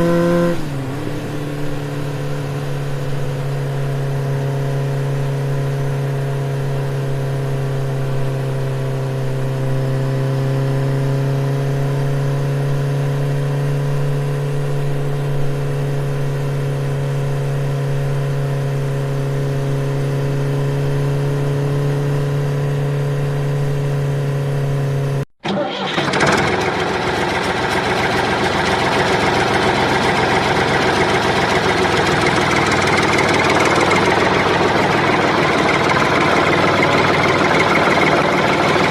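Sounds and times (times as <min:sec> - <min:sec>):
rough noisy engine: 0:00.0 - 0:38.9
vehicle engine humming: 0:00.0 - 0:38.9.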